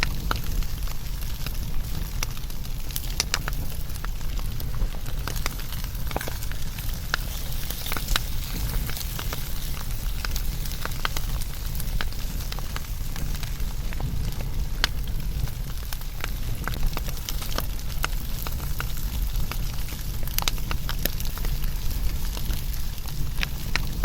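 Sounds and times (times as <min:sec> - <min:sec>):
low rumble of flame: 0:00.0 - 0:24.0
wood fire crackling and popping: 0:00.0 - 0:24.0.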